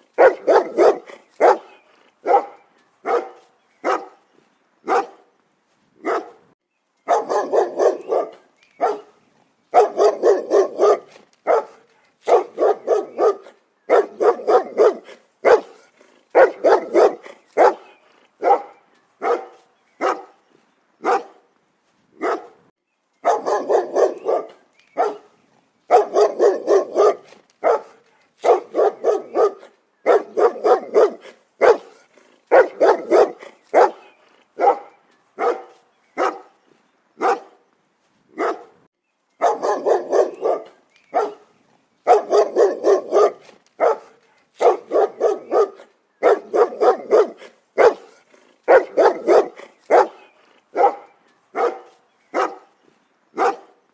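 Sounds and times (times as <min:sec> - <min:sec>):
dog barking: 0:00.2 - 0:04.2, 0:04.8 - 0:05.3, 0:06.0 - 0:06.5, 0:07.1 - 0:20.4, 0:21.0 - 0:21.4, 0:22.2 - 0:22.6, 0:23.2 - 0:36.6, 0:37.2 - 0:37.6, 0:38.4 - 0:38.8, 0:39.4 - 0:53.8.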